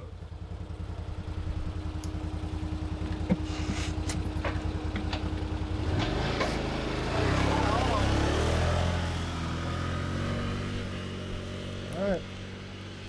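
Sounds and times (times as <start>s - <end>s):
vehicle knocking and rattling: 0.0s - 8.0s
utility vehicle engine running: 0.0s - 13.0s.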